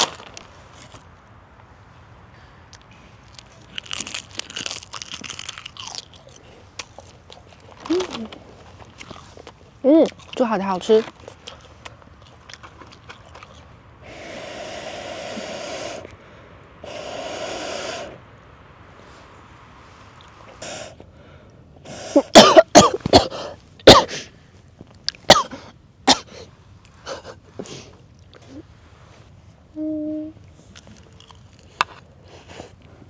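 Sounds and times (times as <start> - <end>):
person blowing breaths: 14.0 - 18.2
loud coughing: 22.2 - 24.3, 25.3 - 26.4.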